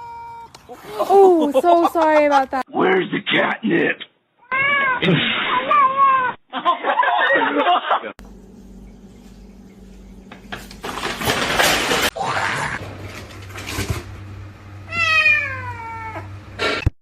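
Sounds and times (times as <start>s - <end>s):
cat meowing: 4.4s - 5.0s, 14.9s - 16.3s.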